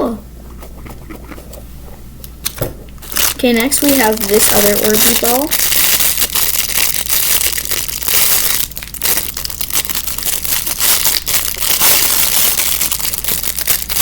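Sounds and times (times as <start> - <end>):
plastic packaging crinkling: 3.0 - 14.0.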